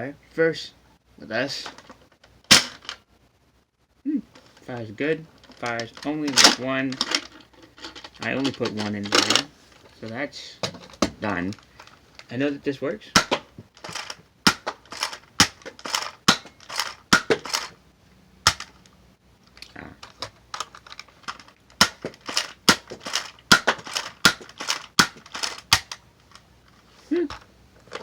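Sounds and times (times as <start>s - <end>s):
toy blaster plastic clacks: 1.6s - 3.0s, 5.4s - 9.5s, 13.2s - 17.8s, 18.5s - 18.8s, 20.0s - 26.4s.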